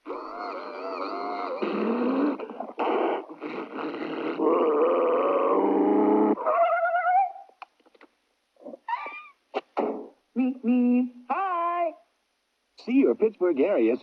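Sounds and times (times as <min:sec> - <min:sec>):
mouth clicks: 0:00.1 - 0:04.5, 0:07.5 - 0:11.0.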